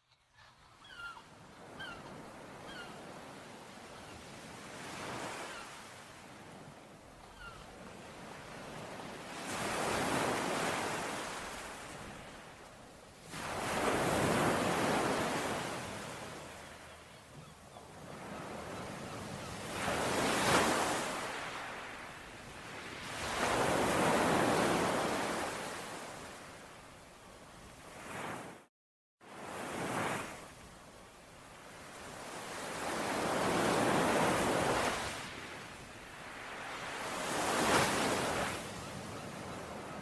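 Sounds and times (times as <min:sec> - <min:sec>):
faint bird chirp: 0:00.0 - 0:03.0, 0:07.2 - 0:07.7, 0:16.4 - 0:19.6
sea waves washing ashore: 0:07.8 - 0:17.1, 0:18.0 - 0:26.7, 0:31.4 - 0:40.0.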